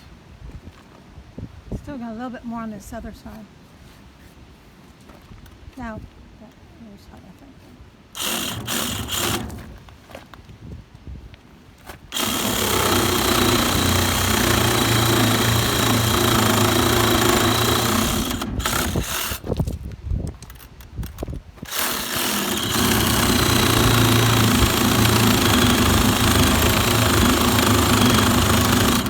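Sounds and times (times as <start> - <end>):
power saw cutting lumber: 8.2 - 9.8, 12.1 - 19.5, 21.6 - 29.0.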